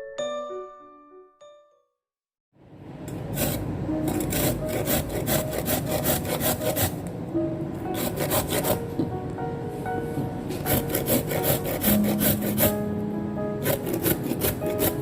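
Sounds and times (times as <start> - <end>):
soft background music: 3.3 - 15.0
knife scraping cutting board: 3.4 - 7.0, 8.0 - 8.8, 10.5 - 12.8, 13.6 - 15.0.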